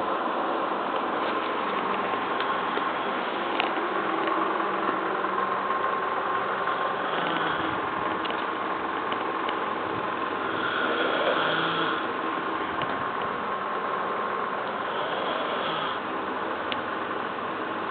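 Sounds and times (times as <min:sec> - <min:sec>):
steady mechanical hum: 0:00.0 - 0:17.9
person snoring: 0:07.0 - 0:07.8, 0:10.4 - 0:12.1, 0:14.8 - 0:16.0.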